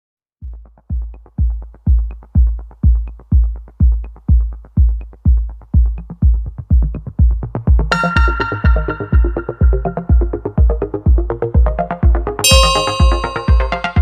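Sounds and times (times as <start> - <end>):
kick drum beating: 0.4 - 14.0
electronic music: 0.5 - 14.0
synth chords: 7.8 - 14.0.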